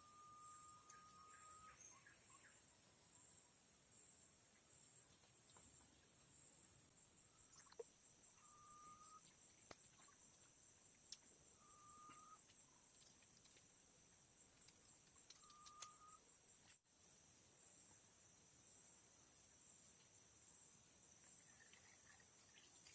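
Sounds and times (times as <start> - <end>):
insects droning: 0.0 - 22.9
faint clicks: 14.6 - 16.2.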